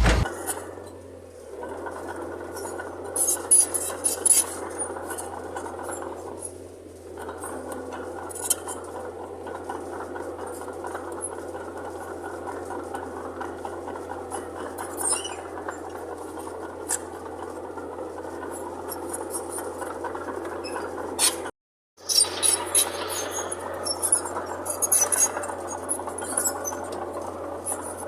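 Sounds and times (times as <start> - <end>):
bulldozer engine running: 0.0 - 0.3, 22.0 - 28.0.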